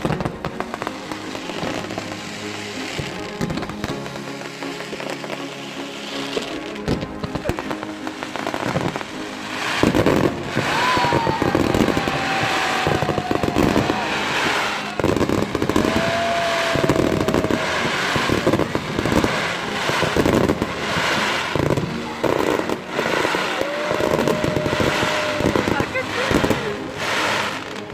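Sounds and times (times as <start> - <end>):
fireworks crackling bangs: 0.0 - 27.9
long whistling tones: 9.4 - 27.8.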